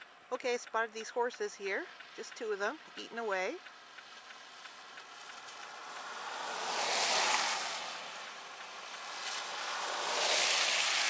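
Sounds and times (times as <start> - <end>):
tyres hissing through wet slush: 5.1 - 11.0.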